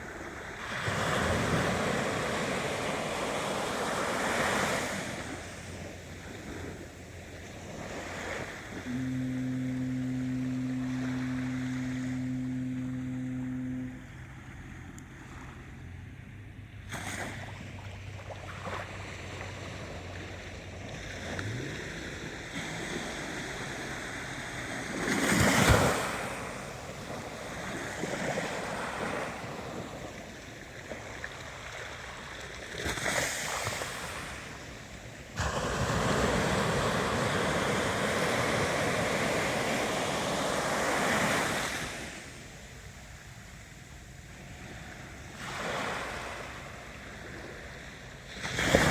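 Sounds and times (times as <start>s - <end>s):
ocean waves breaking: 0.0s - 48.9s
faint low hum: 5.4s - 16.8s.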